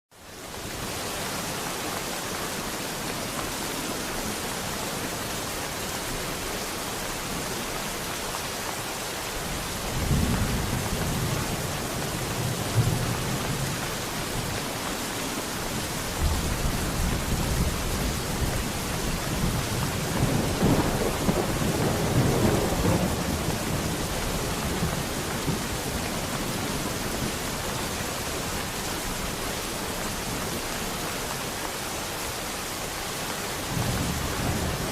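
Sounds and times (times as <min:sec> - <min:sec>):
steady rain: 0:00.1 - 0:34.9
thunder rumbling: 0:16.0 - 0:27.4.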